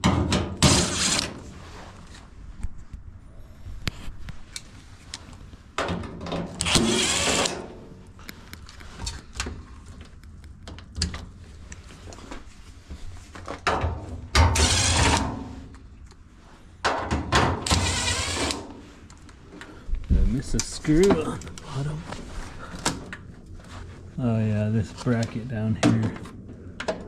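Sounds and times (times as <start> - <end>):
metal panel scraping and rattling: 0.0 - 1.6, 5.9 - 7.8, 14.4 - 15.6, 17.4 - 18.8.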